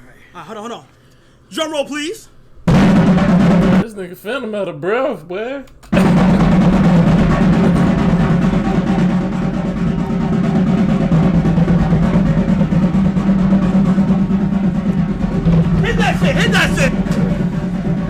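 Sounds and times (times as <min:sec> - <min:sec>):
drum roll: 0:02.7 - 0:03.9, 0:05.9 - 0:18.0.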